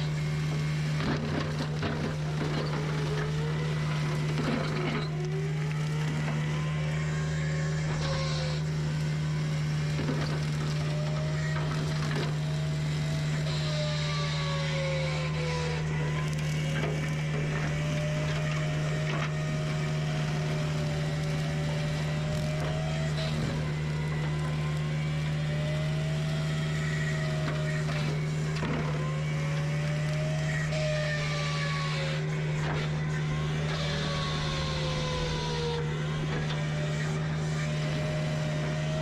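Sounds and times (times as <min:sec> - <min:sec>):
diesel engine running: 0:00.0 - 0:39.0
hydraulic whine: 0:00.0 - 0:39.0.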